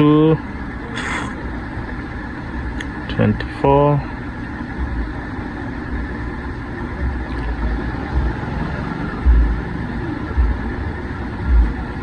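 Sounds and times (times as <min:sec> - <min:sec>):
low rumble: 0:04.2 - 0:12.0.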